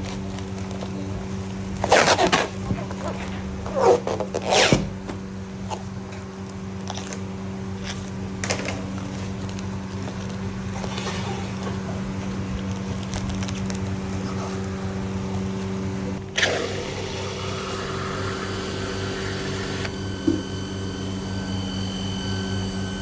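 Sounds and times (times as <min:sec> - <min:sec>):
steady mechanical hum: 0:00.0 - 0:23.0.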